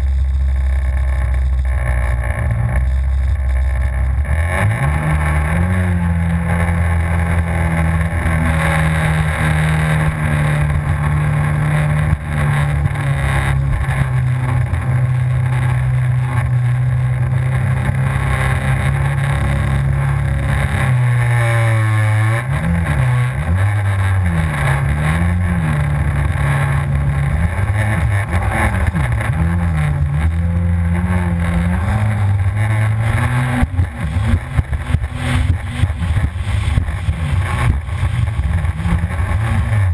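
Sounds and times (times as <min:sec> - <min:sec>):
personal watercraft engine revving: 0:00.0 - 0:39.9.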